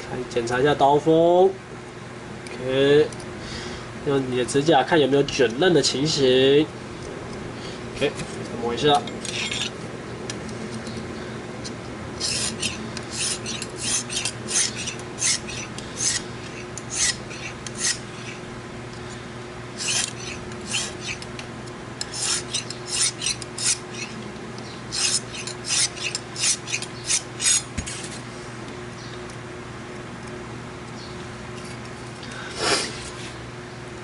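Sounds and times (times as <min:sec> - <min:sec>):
sharpening stone scraping knife edge: 0:09.2 - 0:09.7, 0:12.2 - 0:18.4, 0:19.8 - 0:21.3, 0:22.0 - 0:24.2, 0:24.9 - 0:27.7.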